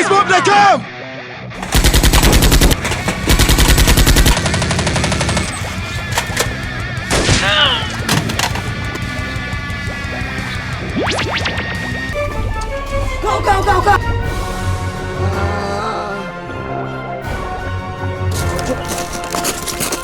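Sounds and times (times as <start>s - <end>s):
background music: 0.0s - 20.0s
automatic gunfire bursts: 1.6s - 9.0s.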